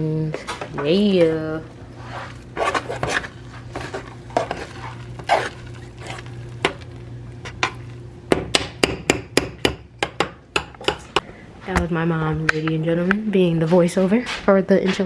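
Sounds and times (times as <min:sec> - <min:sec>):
steady low hum: 0:00.0 - 0:14.5
spoon scraping and clinking pot: 0:01.9 - 0:08.0.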